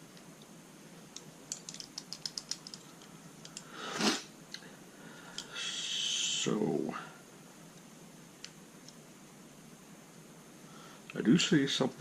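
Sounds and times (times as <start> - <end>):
padlock parts clicking: 1.2 - 3.7.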